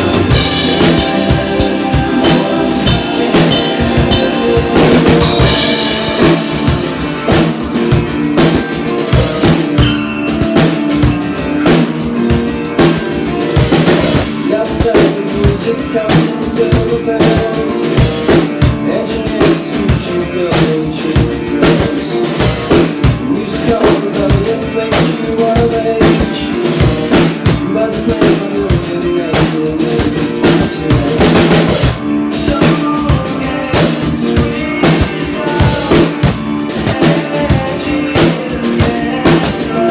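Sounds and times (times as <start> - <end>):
pitched instrumental parts: 0.0 - 15.4
drum kit steady beat: 0.0 - 39.9.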